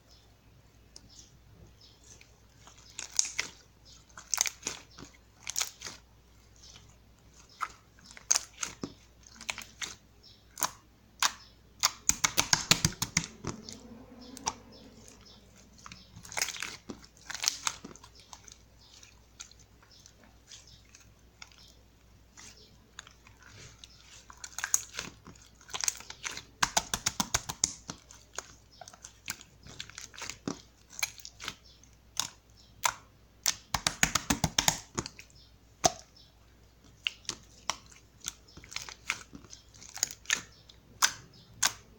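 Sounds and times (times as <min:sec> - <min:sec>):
slime crust crackling: 0:06.6 - 0:36.2.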